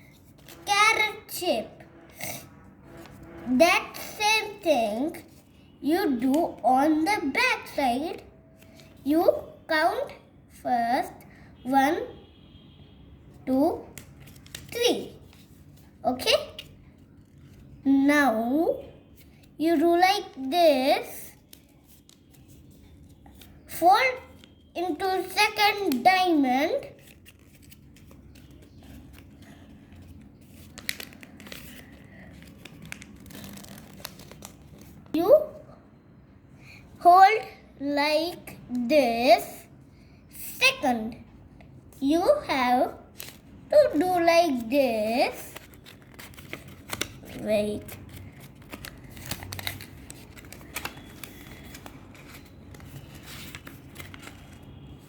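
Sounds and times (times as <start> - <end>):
paper crinkling and rustling: 0.0 - 0.7, 14.0 - 16.0, 21.3 - 24.7, 26.8 - 35.2, 43.1 - 43.5, 45.3 - 55.0
sharp paper ticks: 14.0 - 15.4, 30.0 - 35.0, 43.2 - 43.4, 45.4 - 54.9.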